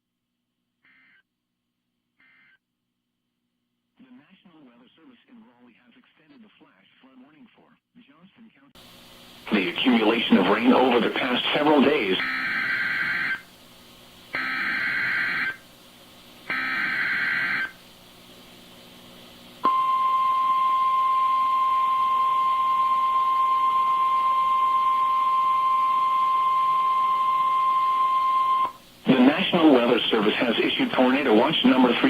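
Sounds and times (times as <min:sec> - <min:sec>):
steady single-pitch alert tone: 0:19.6 - 0:28.8.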